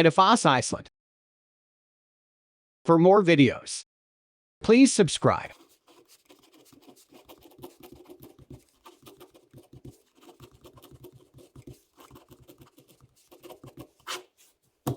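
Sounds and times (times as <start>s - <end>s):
light tapping and scratching: 5.5s - 14.9s.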